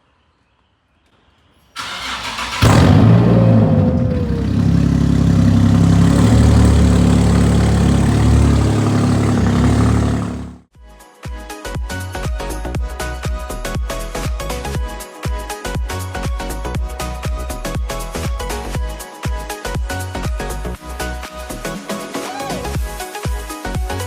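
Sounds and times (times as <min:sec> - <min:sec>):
car engine revving and idling: 0:01.8 - 0:10.6
starter cranking: 0:01.8 - 0:10.6.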